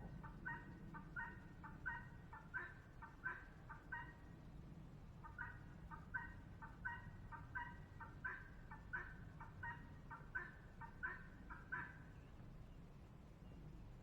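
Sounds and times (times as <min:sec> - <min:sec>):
fowl calling in paired notes: 0:00.0 - 0:04.3, 0:05.2 - 0:12.1.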